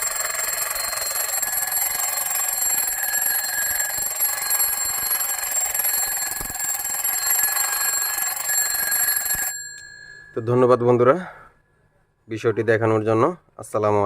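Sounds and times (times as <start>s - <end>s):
alarm clock ringing: 0.0s - 11.0s.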